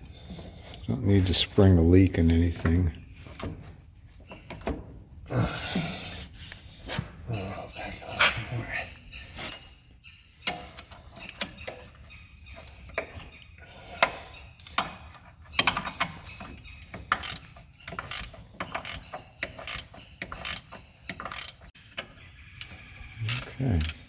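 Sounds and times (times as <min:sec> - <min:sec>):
ratchet wrench clicking: 0:17.1 - 0:21.6, 0:23.3 - 0:24.0.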